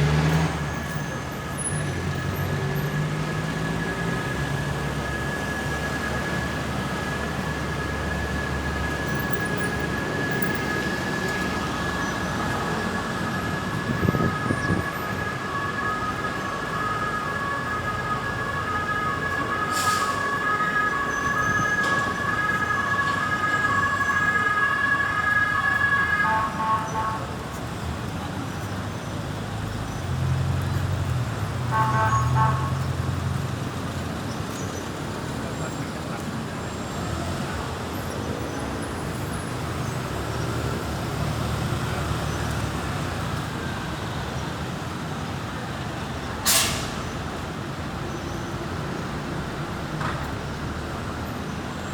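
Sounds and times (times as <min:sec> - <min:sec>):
emergency vehicle siren: 0:00.0 - 0:51.9
passing engine: 0:00.0 - 0:51.9
road traffic: 0:00.0 - 0:51.9
multi-note horn blast: 0:31.7 - 0:33.1.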